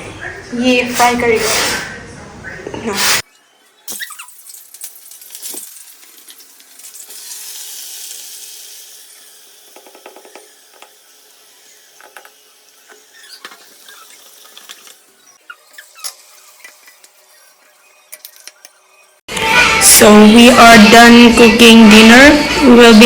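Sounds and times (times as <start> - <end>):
food sizzling in oil: 3.9 - 17.5.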